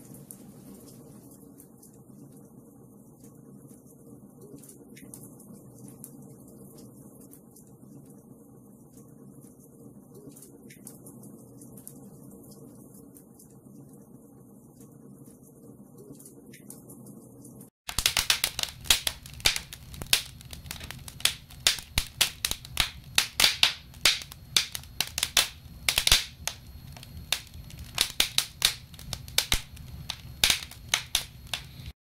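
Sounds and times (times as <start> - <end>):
low steady fire rumble: 17.9 - 31.9
wood fire crackling and popping: 17.9 - 32.0.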